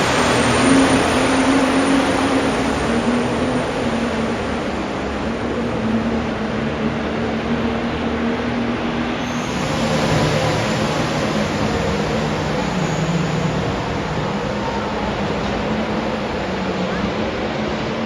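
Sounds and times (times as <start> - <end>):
loud rushing noise: 0.0 - 7.1, 8.5 - 18.0
engine humming: 9.2 - 18.0.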